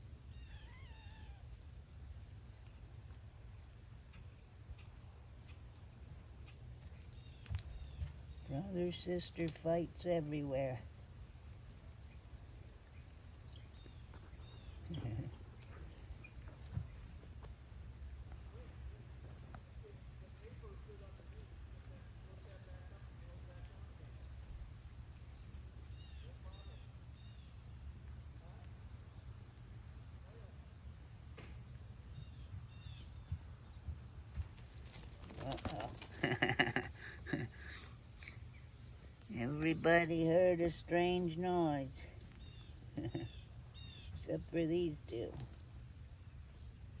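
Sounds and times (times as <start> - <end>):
crickets chirping: 0.0 - 47.0
faint bird chirps: 0.3 - 1.6, 42.2 - 45.8.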